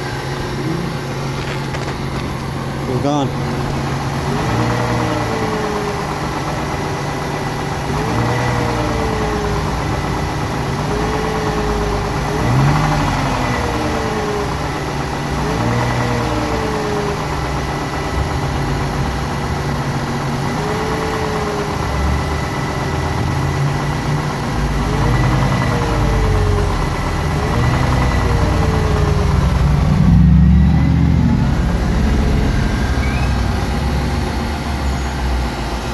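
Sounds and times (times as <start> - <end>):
car engine running: 0.0 - 35.9
faint engine whine: 0.0 - 35.9.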